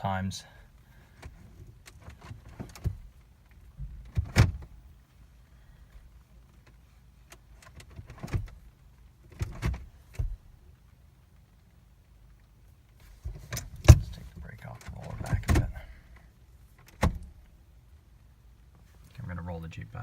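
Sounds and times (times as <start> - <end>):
gear selector clunking: 1.2 - 4.7, 9.3 - 10.4, 13.1 - 17.4.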